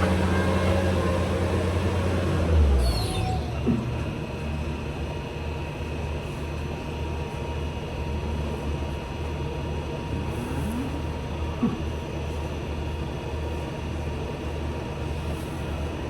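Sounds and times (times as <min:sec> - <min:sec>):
engine drone: 0:00.0 - 0:05.6.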